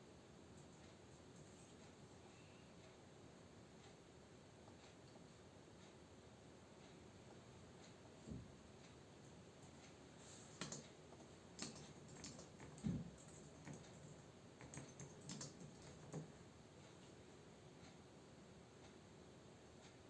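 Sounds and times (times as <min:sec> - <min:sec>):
faint computer keyboard typing: 0:00.5 - 0:02.2, 0:08.8 - 0:17.2.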